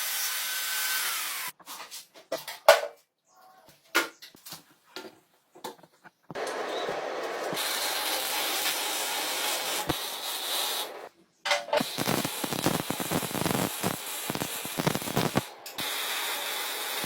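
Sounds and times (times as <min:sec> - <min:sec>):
hissing spray: 0:07.4 - 0:11.1, 0:11.8 - 0:17.0.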